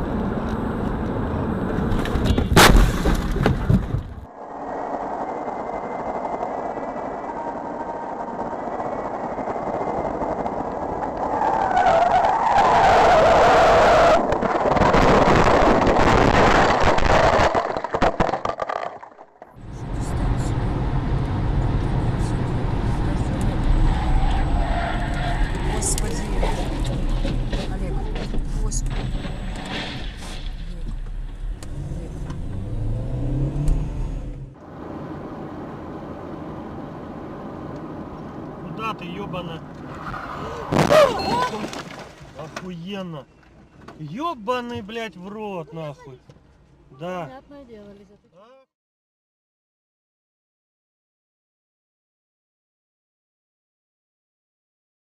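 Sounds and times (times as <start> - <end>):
road noise rumble: 0.0 - 48.6
car tyres squealing: 11.0 - 14.4, 23.5 - 31.1, 39.8 - 42.6
car engine accelerating: 19.6 - 40.8.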